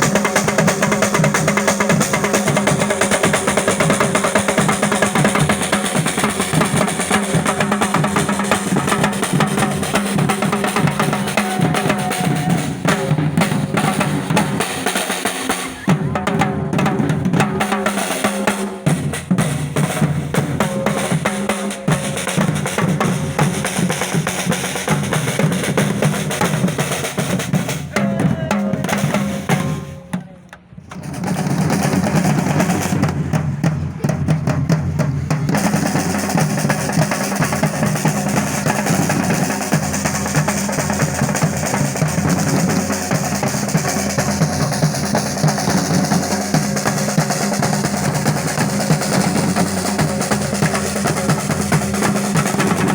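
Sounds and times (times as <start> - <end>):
drum and percussion music: 0.0 - 52.9.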